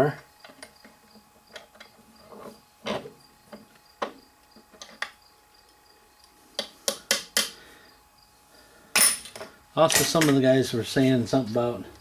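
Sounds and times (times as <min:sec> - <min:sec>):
metal tools clicking: 0:09.0 - 0:10.4.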